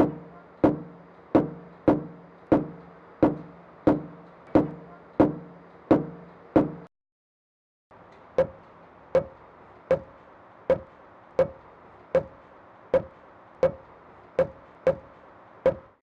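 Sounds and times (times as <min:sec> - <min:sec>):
sharp knocks on a wall: 0:00.0 - 0:06.9, 0:08.4 - 0:08.6, 0:09.2 - 0:10.1, 0:10.7 - 0:11.6, 0:12.2 - 0:12.4, 0:13.0 - 0:13.8, 0:14.4 - 0:15.9.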